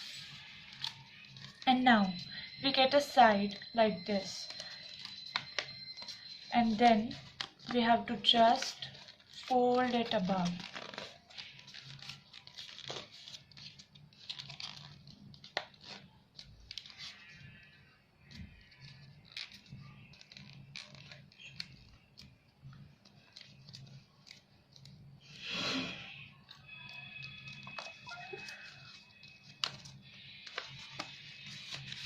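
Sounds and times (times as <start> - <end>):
paper rustling and crinkling: 0.0 - 25.4, 26.1 - 32.0.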